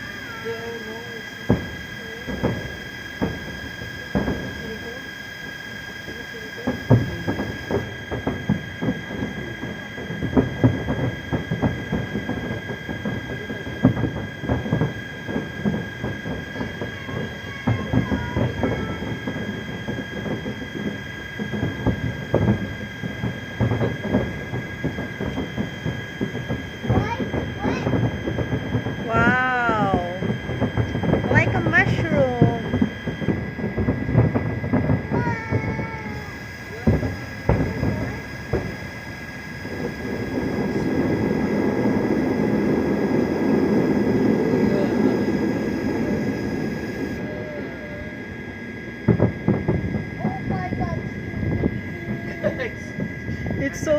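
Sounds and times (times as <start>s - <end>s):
distant fireworks booming and crackling: 0.0s - 53.9s
low noisy rumble: 0.0s - 53.9s.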